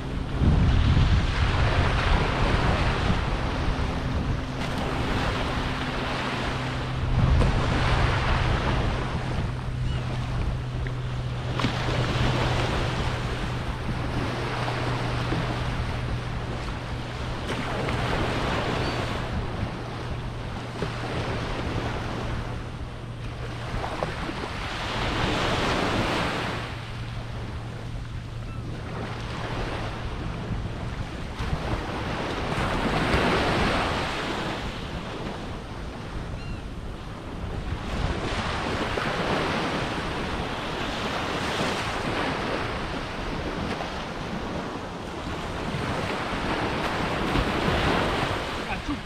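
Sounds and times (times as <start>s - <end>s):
steady low hum: 0.0s - 39.0s
surf washing on beach: 0.0s - 49.0s
wind on microphone: 0.0s - 49.0s.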